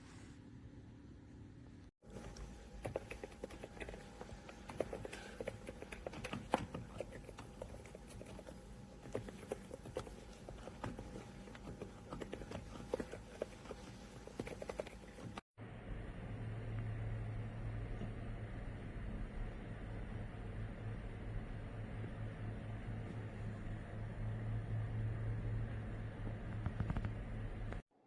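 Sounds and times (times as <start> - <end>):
mechanical keyboard typing: 2.8 - 8.5.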